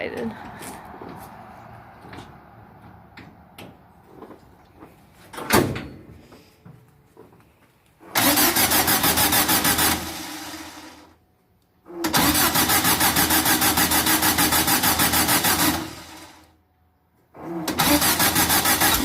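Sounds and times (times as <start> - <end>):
engine cranking on starter: 8.0 - 11.2, 11.8 - 16.5, 17.4 - 19.0.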